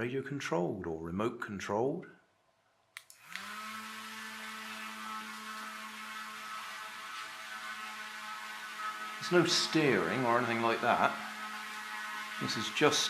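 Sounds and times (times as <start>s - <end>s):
electric motor and propeller humming: 3.1s - 13.0s.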